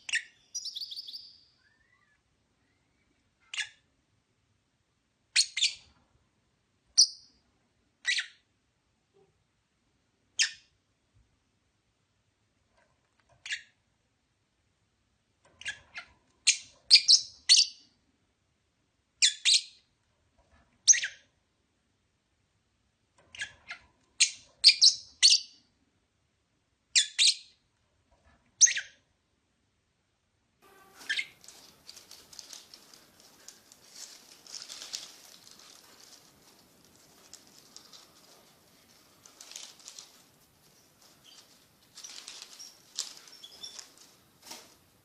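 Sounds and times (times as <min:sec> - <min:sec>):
lovebirds chirping: 0:00.0 - 0:03.8, 0:30.6 - 0:45.0
scratchy rustle: 0:30.6 - 0:45.0.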